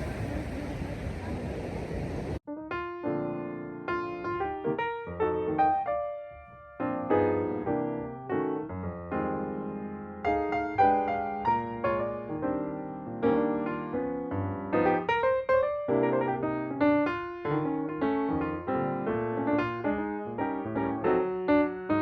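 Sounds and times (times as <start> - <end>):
piano music: 2.5 - 22.0.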